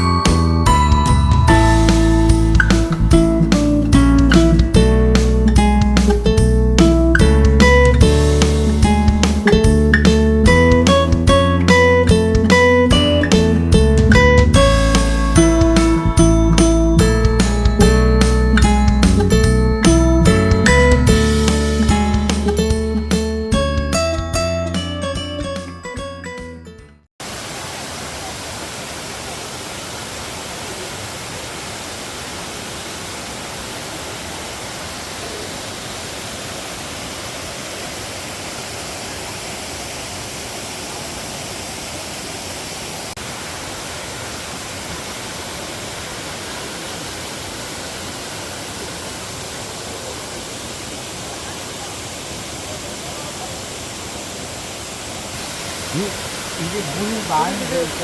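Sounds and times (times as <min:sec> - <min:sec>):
waterfall rushing: 0:00.0 - 0:23.5, 0:27.2 - 0:58.0
guitar music: 0:00.0 - 0:27.0.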